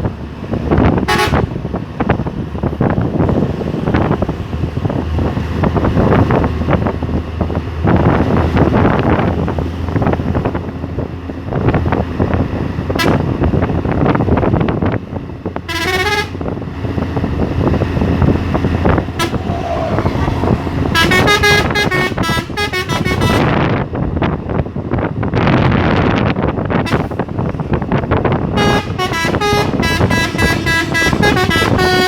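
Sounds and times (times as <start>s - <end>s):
road noise: 0.0s - 32.0s
truck engine: 0.0s - 32.0s
truck horn melodic toots: 1.0s - 1.6s, 15.7s - 16.6s, 17.6s - 23.7s, 28.5s - 32.0s.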